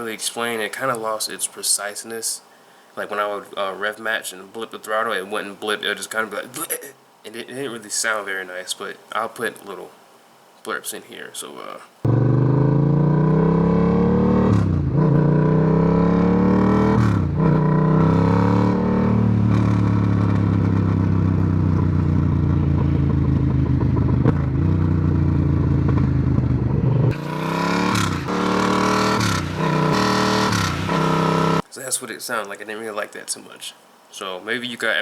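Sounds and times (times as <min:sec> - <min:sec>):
motorcycle engine revving: 0:12.0 - 0:31.6.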